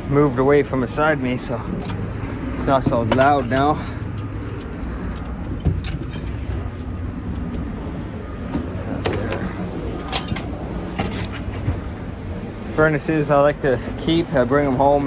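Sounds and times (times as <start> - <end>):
heavy machinery rumbling: 0.0 - 15.0
scrap metal clanking: 1.4 - 12.0.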